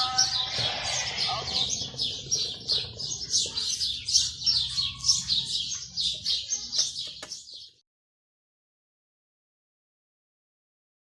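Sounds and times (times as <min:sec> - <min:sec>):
small bird chirping rapidly: 0:00.0 - 0:07.8.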